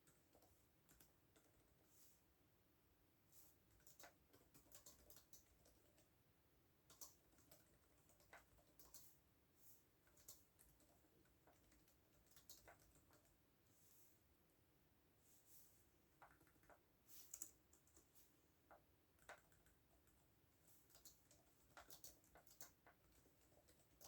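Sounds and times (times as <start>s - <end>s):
faint keyboard typing: 0.0s - 2.3s, 3.3s - 13.8s, 15.9s - 24.0s.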